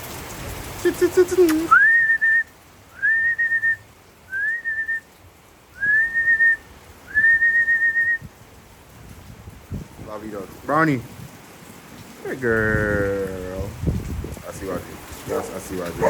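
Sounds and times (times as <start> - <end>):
rain hiss: 0.0 - 16.0
rising warbling whistle call: 1.7 - 5.1, 5.8 - 8.2.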